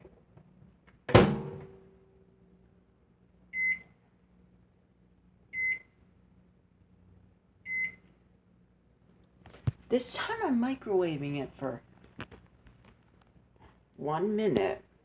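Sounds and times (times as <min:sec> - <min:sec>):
microwave oven beeping: 0:03.5 - 0:04.0, 0:05.5 - 0:06.0, 0:07.6 - 0:08.1.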